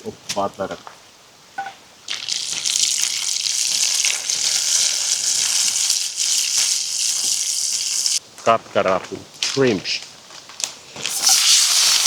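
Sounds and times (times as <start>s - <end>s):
food sizzling in a pan: 2.1s - 8.2s, 11.0s - 12.0s.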